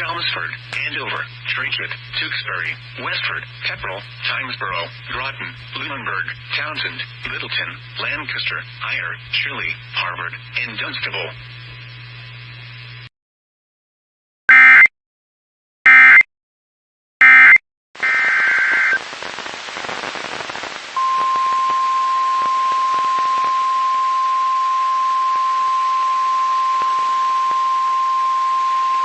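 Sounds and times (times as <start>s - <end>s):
radio static hiss: 0.0s - 13.1s, 18.0s - 24.4s.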